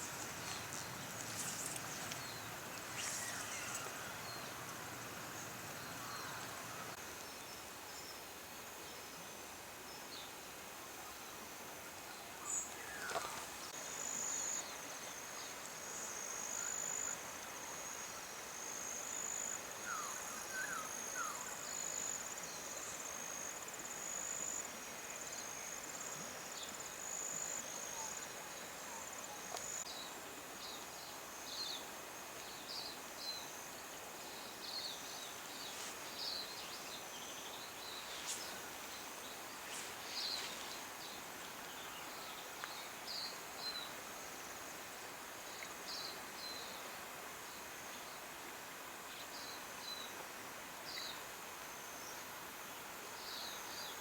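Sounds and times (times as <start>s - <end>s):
soft hiss: 0.0s - 54.0s.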